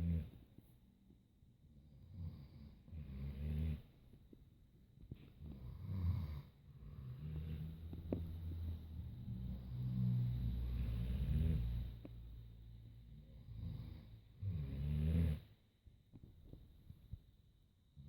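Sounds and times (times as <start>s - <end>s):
low rattling snores: 0.0s - 0.4s, 1.8s - 4.1s, 5.3s - 12.4s, 13.0s - 15.6s.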